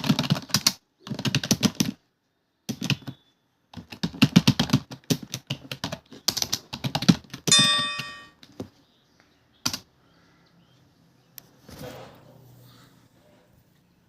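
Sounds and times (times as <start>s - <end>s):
fast typing on keyboard: 0.0s - 2.0s, 2.7s - 3.1s, 3.7s - 7.6s, 9.6s - 9.8s
bell-like ding: 7.5s - 8.4s.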